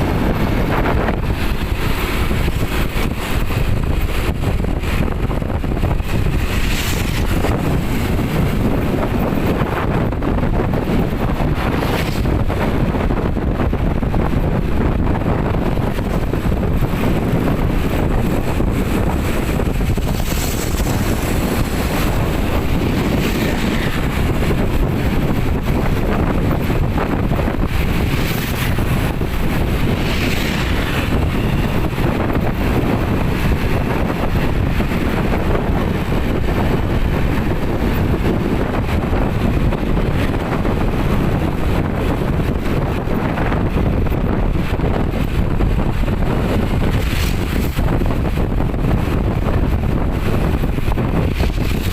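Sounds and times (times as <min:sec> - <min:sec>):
wind buffeting the microphone: 0:00.0 - 0:51.9.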